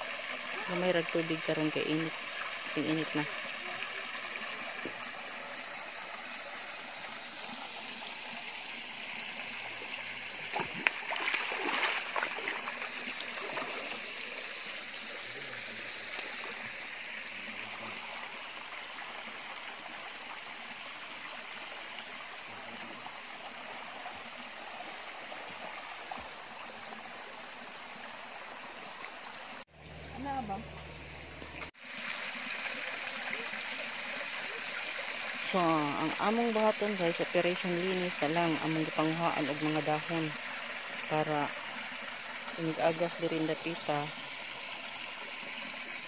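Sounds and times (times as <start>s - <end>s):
water splashing: 0.0s - 20.2s
water running over rocks: 0.0s - 46.0s.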